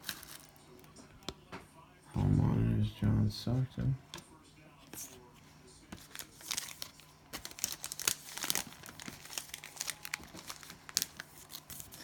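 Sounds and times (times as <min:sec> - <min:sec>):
plastic wrappers crinkling: 0:00.0 - 0:00.9, 0:06.0 - 0:12.0.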